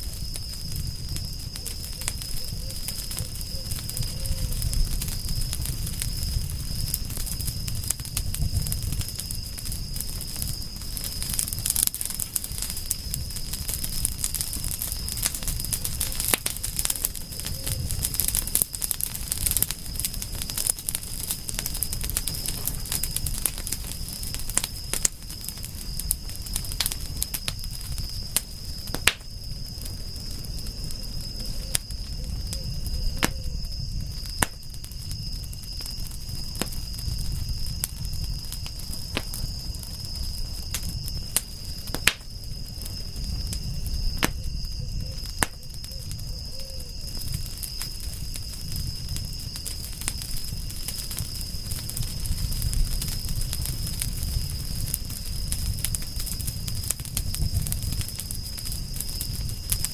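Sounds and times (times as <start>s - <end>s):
insect trill: 0.0s - 59.9s
wood fire crackling and popping: 0.0s - 59.9s.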